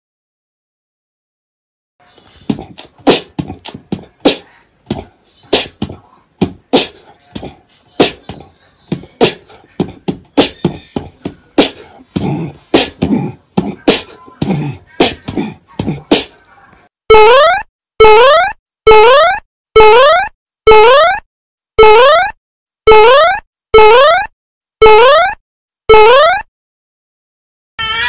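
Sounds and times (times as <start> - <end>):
beatboxing: 2.2 - 16.5.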